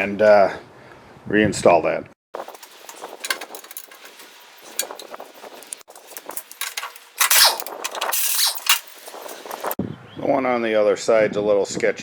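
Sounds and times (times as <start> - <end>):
metal scraping: 2.4 - 9.8
metal tools clinking on steel housing: 2.4 - 9.8.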